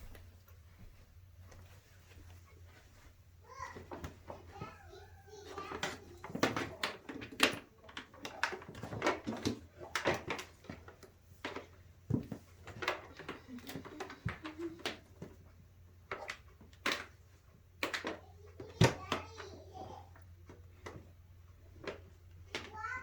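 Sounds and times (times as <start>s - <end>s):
clicks and knocks from handling: 5.4s - 23.0s.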